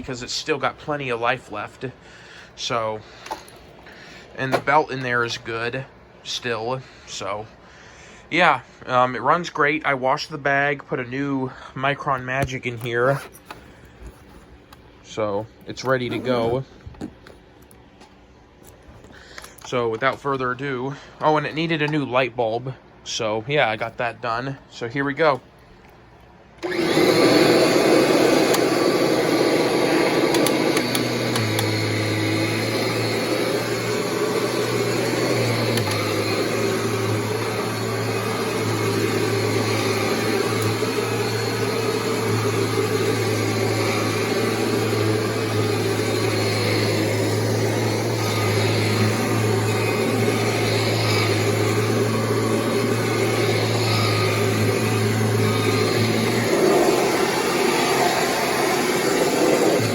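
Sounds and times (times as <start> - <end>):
vacuum cleaner running: 0.0 - 7.6, 12.4 - 16.7, 26.6 - 59.9.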